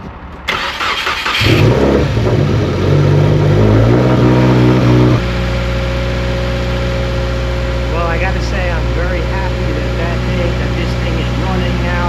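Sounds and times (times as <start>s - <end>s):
car engine cranking: 0.5s - 5.2s
car engine running: 1.3s - 12.0s.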